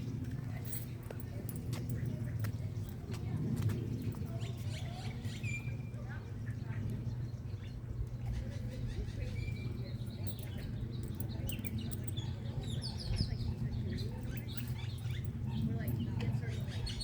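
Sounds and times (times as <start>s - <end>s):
birds chirping: 7.0s - 17.0s.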